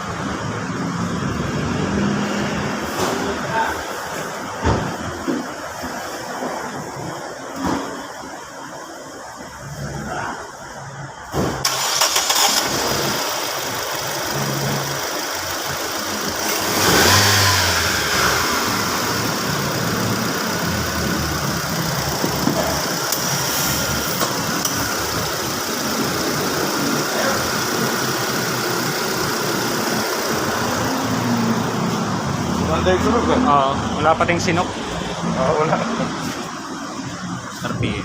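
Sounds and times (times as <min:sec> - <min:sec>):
engine revving: 0:11.6 - 0:34.7
car engine idling: 0:11.6 - 0:38.0.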